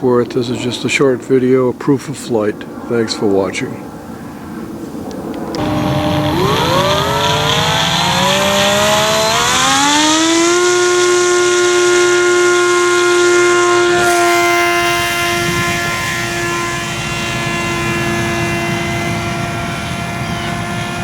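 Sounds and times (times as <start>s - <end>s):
model aircraft motor whine: 5.4s - 21.0s.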